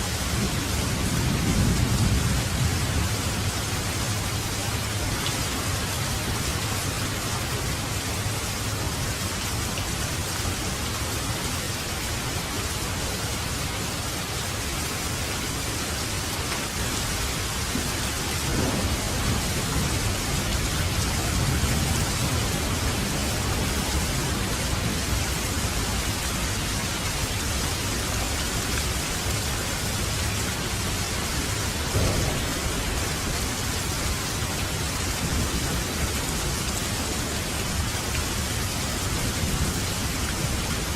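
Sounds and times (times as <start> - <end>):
steady rain falling: 0.0 - 40.9
thunder rumbling: 0.1 - 5.0, 17.0 - 26.7, 31.6 - 40.9.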